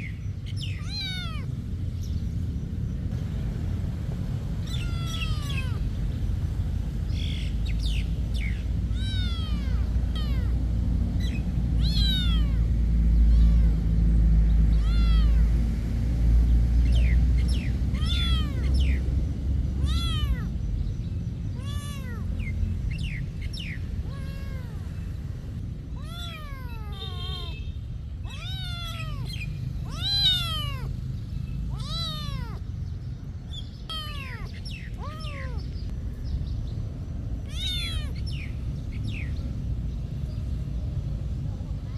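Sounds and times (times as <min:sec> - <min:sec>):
cat meowing: 0:00.0 - 0:01.6, 0:04.6 - 0:06.0, 0:08.3 - 0:15.8, 0:16.8 - 0:20.7, 0:21.5 - 0:31.0, 0:31.6 - 0:35.9, 0:37.4 - 0:39.5
low background rumble: 0:00.0 - 0:41.9.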